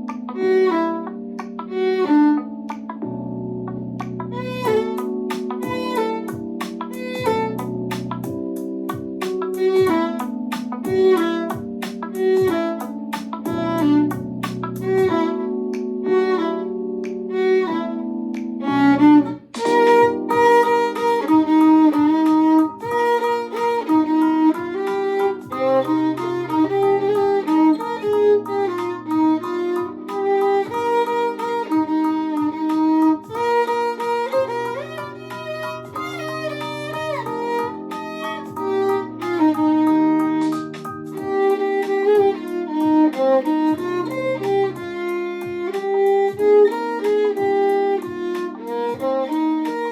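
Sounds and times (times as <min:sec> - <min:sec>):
backing track with bass and chords: 0:00.0 - 0:49.9
violin playing pop ballad melody: 0:00.0 - 0:49.9.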